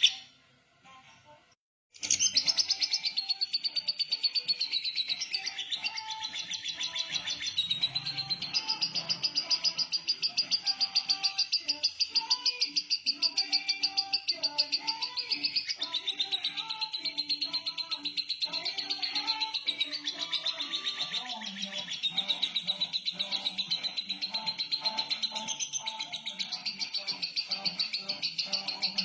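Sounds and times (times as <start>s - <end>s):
lovebird chattering: 2.0s - 29.0s.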